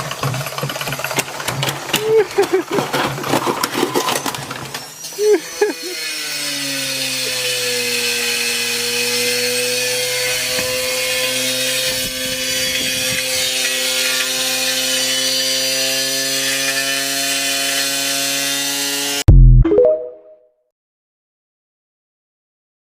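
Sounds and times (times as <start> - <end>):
tools grinding in drum: 0.0 - 5.8.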